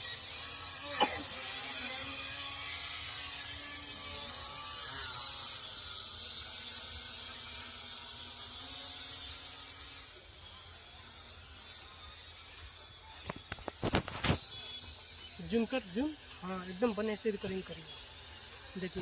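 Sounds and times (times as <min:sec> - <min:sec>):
quadcopter motors whirring: 0:00.0 - 0:19.0.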